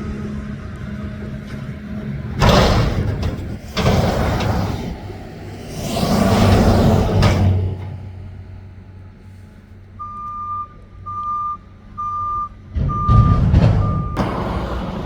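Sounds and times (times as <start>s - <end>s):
garbage truck engine: 0.0s - 10.1s, 10.8s - 15.0s
reversing alarm beeps: 10.0s - 14.2s.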